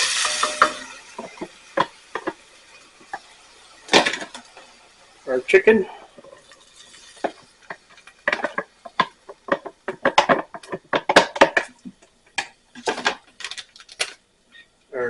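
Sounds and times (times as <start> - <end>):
utensil clinking against cookware: 0.0 - 2.4, 7.2 - 11.7.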